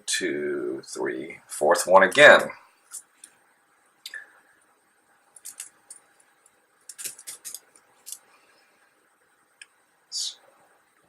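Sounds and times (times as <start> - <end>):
plastic parts clicking: 5.4 - 5.7.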